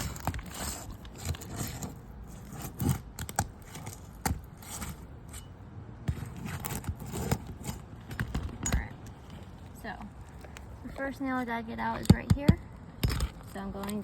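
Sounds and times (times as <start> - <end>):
shingles scraping and tearing: 0.0 - 11.2.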